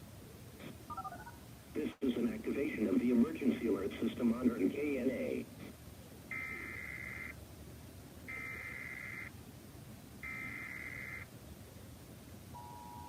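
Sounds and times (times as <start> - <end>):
buzzy digital data tones: 6.3 - 7.4, 8.3 - 9.3, 10.2 - 11.3.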